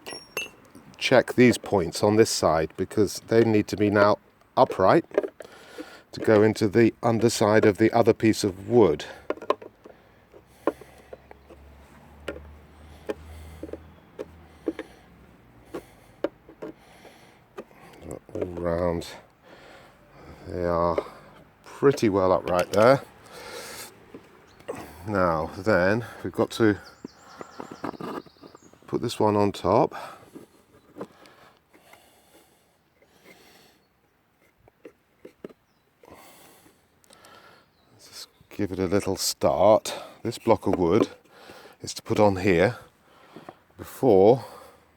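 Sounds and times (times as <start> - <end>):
light knocks and clicks of timber: 9.2 - 15.0.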